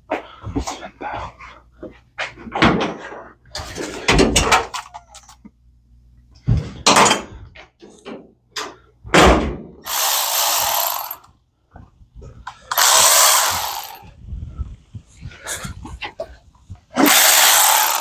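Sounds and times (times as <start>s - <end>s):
handheld power tool running: 9.9s - 11.3s, 12.7s - 14.1s, 17.0s - 18.0s.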